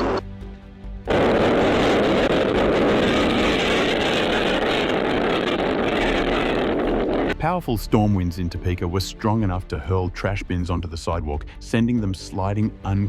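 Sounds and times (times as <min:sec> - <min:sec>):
storm wind buffeting microphone: 0:01.1 - 0:07.4.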